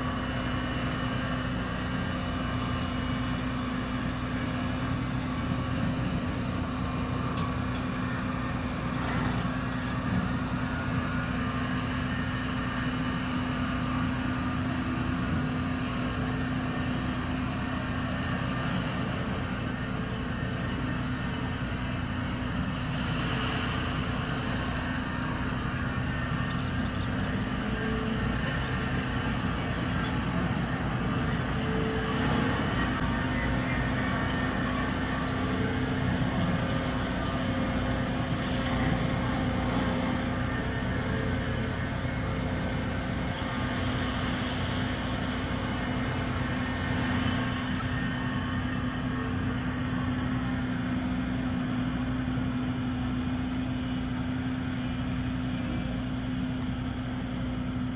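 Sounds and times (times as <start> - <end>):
heavy diesel machinery droning: 0.0 - 57.9
faint squeaks and whines: 24.8 - 51.0.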